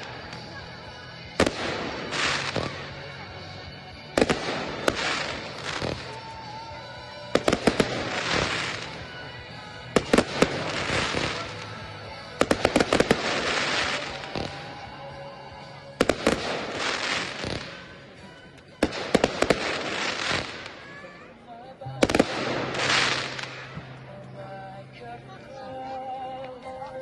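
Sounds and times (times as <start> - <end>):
crackling hiss of fireworks: 0.0 - 21.2, 21.9 - 23.9
firework bangs: 1.4 - 3.0, 4.1 - 6.4, 7.4 - 9.0, 16.0 - 18.0, 18.8 - 21.0, 22.0 - 23.8.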